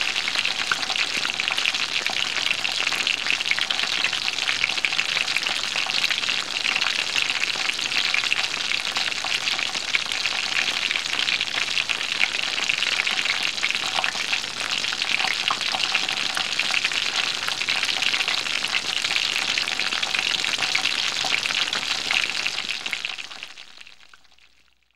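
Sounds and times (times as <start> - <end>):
oil sizzling in a pan: 0.0 - 24.5.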